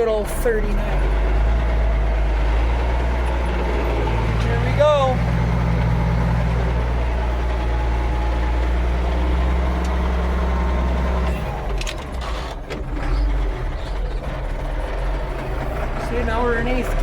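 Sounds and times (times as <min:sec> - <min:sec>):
tractor diesel engine pulling: 0:00.0 - 0:17.0
gear shift clicks: 0:09.7 - 0:14.2.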